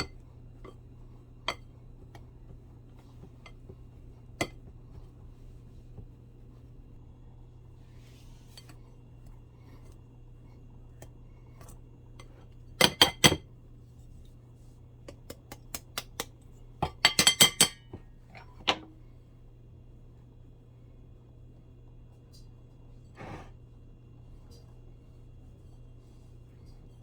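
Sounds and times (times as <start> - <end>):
utensils clinking against a bowl: 16.8 - 18.9.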